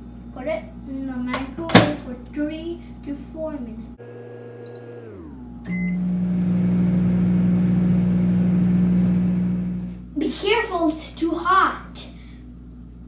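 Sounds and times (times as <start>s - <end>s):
microwave humming: 0.0s - 13.0s
microwave keypad beeping: 4.6s - 4.9s.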